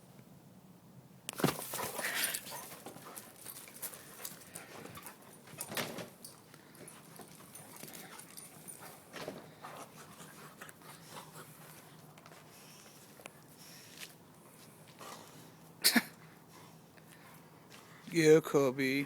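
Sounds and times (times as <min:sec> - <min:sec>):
dog panting: 0:06.8 - 0:13.7.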